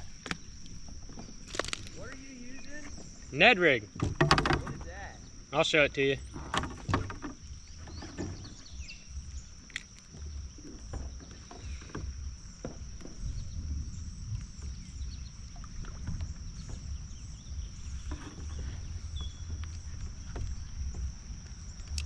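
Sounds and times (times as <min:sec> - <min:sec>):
gear knocking against kayak: 0:03.9 - 0:05.2, 0:06.3 - 0:13.7, 0:14.4 - 0:22.0
low rumble: 0:12.2 - 0:22.0.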